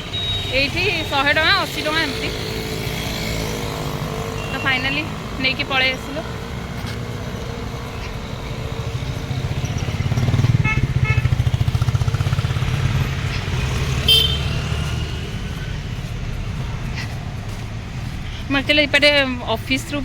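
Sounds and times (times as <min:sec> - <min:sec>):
vehicle engine running: 0:00.0 - 0:20.0
car horn toots: 0:10.6 - 0:11.4, 0:14.0 - 0:14.7.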